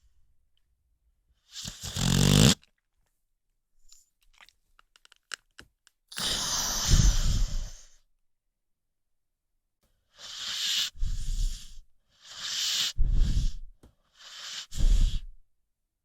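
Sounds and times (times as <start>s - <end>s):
dog snoring: 1.5s - 2.6s, 10.2s - 15.4s.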